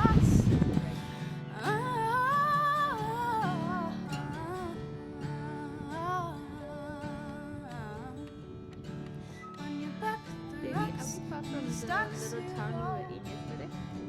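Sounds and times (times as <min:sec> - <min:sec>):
acoustic guitar: 0:00.0 - 0:14.0
person singing slow melody: 0:00.0 - 0:14.0.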